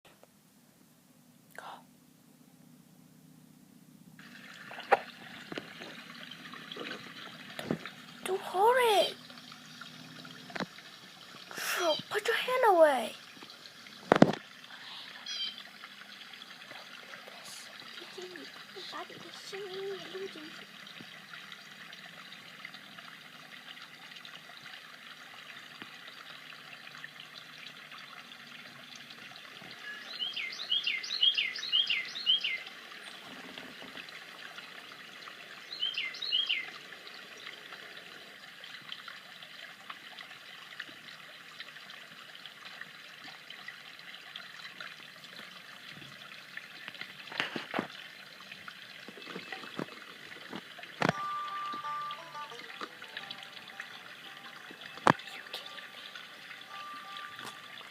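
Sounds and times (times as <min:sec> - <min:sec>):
water trickling: 0:04.1 - 0:57.9
bird calling: 0:15.2 - 0:15.6, 0:29.8 - 0:33.2, 0:35.7 - 0:36.7.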